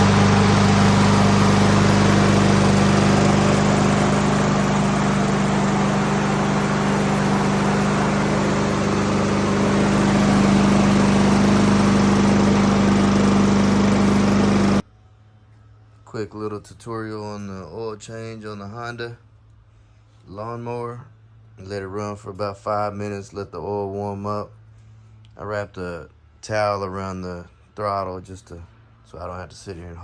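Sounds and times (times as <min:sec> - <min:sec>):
lawnmower engine running: 0:00.0 - 0:14.8.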